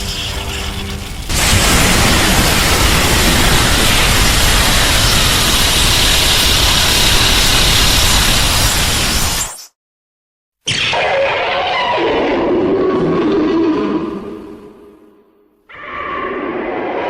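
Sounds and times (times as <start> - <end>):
loud rushing blast of noise: 1.2 - 9.5.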